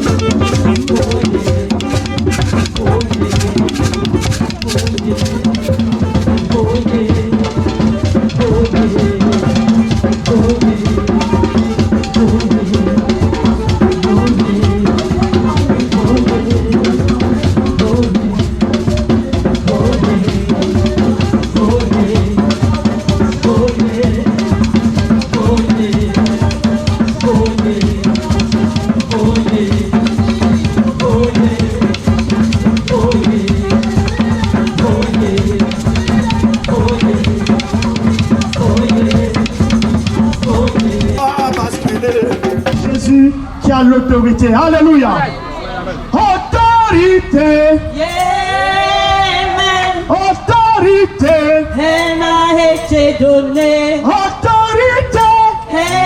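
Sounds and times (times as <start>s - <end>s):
drum kit beat: 0.0s - 43.3s
sustained bass line: 0.0s - 46.2s
gospel music: 0.0s - 56.0s.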